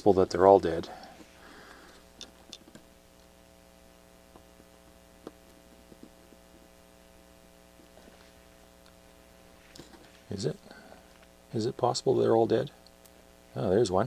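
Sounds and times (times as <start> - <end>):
faint electrical hum: 0.0 - 14.0
probe tips ticking on pads: 0.8 - 8.0.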